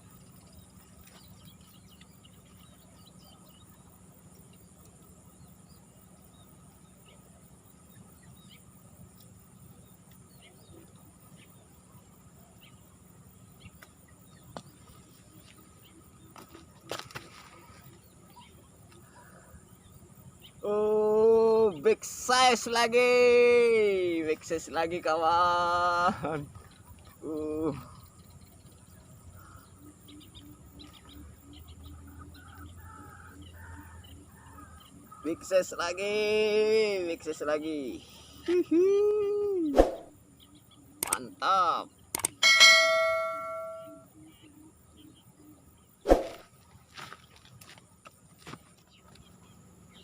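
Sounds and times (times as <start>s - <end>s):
bird chirps: 0.0s - 22.6s, 26.2s - 36.0s, 37.2s - 46.6s
insect drone: 0.0s - 50.0s
low repeated bird notes: 39.4s - 46.4s
high bird chirps: 39.6s - 45.3s
sharp click: 41.0s - 41.3s, 42.1s - 43.6s.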